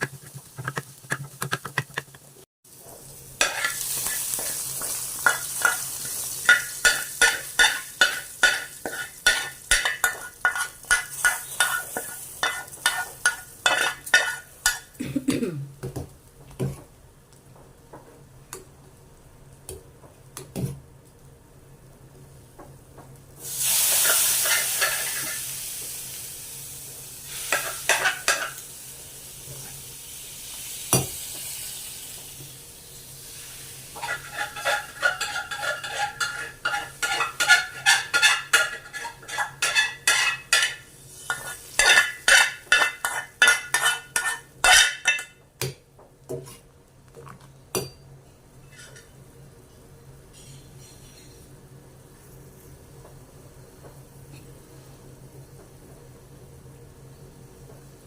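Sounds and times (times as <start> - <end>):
spatula scraping pan: 0.0 - 2.4, 3.4 - 14.9, 23.8 - 25.4, 27.4 - 28.6, 33.9 - 45.3
food sizzling in hot oil: 0.0 - 15.0, 23.3 - 45.4.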